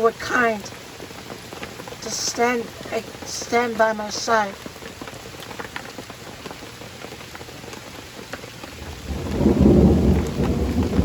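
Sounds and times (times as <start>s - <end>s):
raindrops ticking: 0.0s - 11.0s
steady rain: 0.0s - 11.0s
thunder rumbling: 8.8s - 11.0s.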